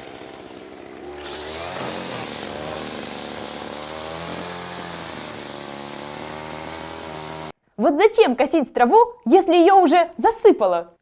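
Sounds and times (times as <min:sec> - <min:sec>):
petrol grass trimmer engine: 0:00.0 - 0:07.5.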